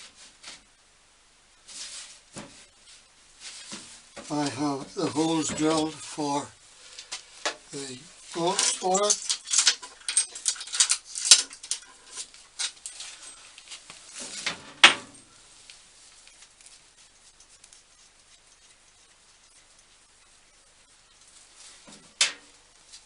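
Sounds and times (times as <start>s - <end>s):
metal accessories clicking and knocking: 8.3s - 13.2s.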